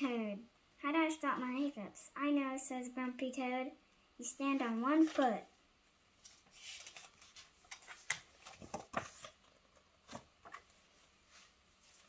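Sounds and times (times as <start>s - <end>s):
paper rustling: 5.0s - 5.4s, 6.2s - 12.0s.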